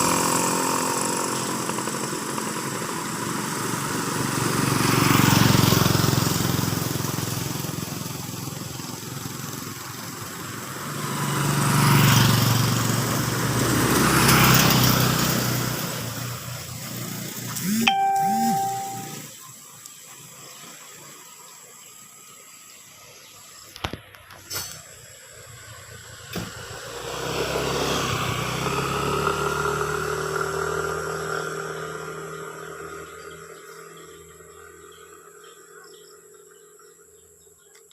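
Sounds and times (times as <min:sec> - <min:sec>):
highway traffic driving by: 0:00.0 - 0:19.3, 0:25.4 - 0:35.4
vehicles passing on road: 0:00.0 - 0:19.3, 0:24.0 - 0:37.2.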